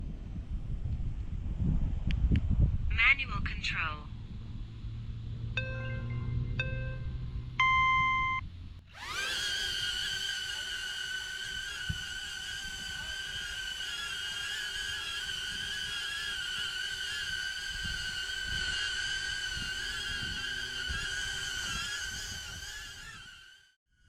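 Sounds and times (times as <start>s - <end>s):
low uneven rumble: 0.0s - 8.8s
drone propellers whining: 4.1s - 23.8s.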